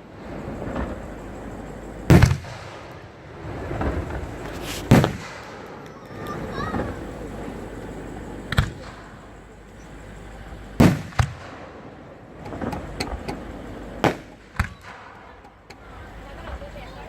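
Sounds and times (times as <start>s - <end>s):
fireworks bangs: 0.0s - 7.5s, 10.8s - 16.7s
crackling pops: 4.4s - 6.4s, 14.0s - 15.8s.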